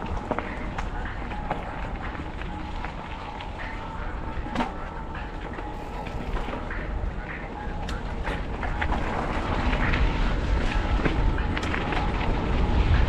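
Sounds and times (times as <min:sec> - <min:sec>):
bike rattling and clacking: 0:00.0 - 0:13.0
bike tyre noise: 0:00.0 - 0:13.0
wind rumble on microphone: 0:00.0 - 0:13.0.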